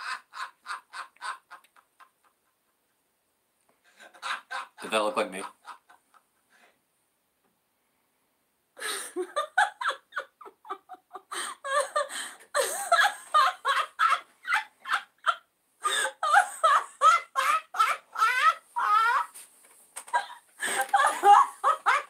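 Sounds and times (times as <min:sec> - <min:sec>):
person laughing: 0:04.0 - 0:05.9, 0:08.8 - 0:19.4, 0:20.1 - 0:22.0.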